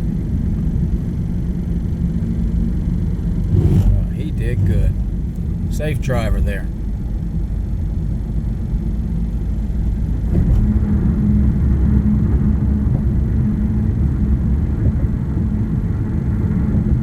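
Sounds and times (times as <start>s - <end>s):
car road rumble and engine: 0.0s - 17.0s
steady hum: 3.1s - 7.9s.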